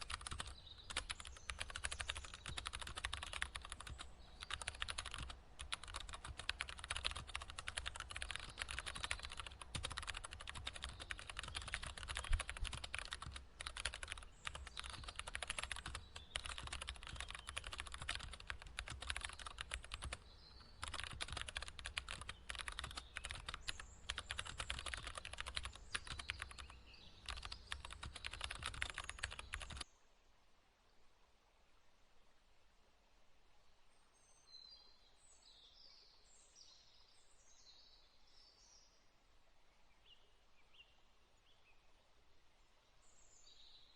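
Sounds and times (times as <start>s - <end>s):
typing on computer keyboard: 0.0s - 20.2s, 20.8s - 29.8s.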